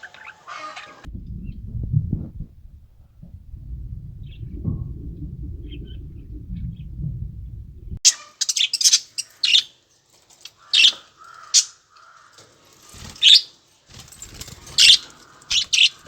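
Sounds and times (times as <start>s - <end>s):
low rumble: 1.1s - 8.0s
soft bird warbling: 3.2s - 8.0s.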